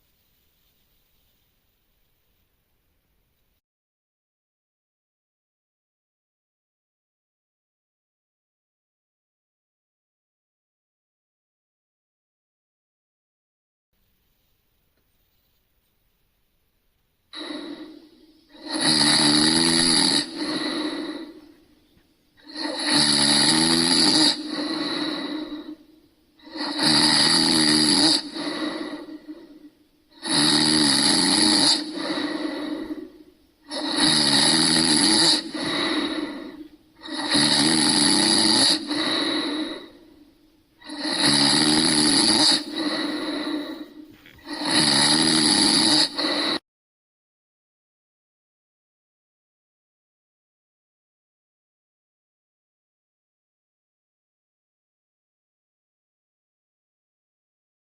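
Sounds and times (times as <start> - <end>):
person snoring loudly: 17.3 - 21.8, 22.4 - 46.6.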